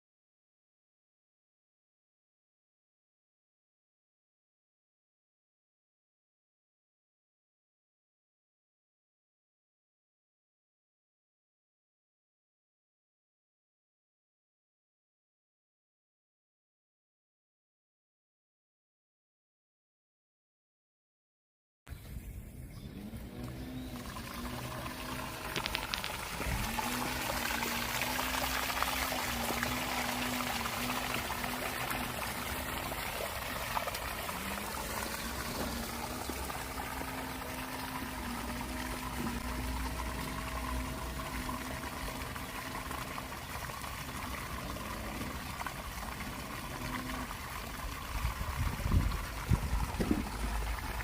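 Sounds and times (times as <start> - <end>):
water pouring from pump outlet: 22.8 - 51.0.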